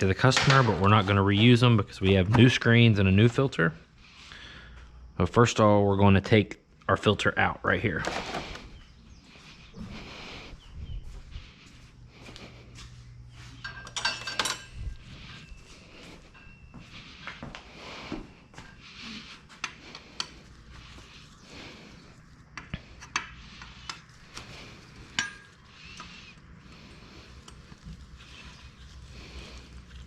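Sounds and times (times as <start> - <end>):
hand tools and metal parts clinking: 12.8 - 17.5, 18.6 - 29.7.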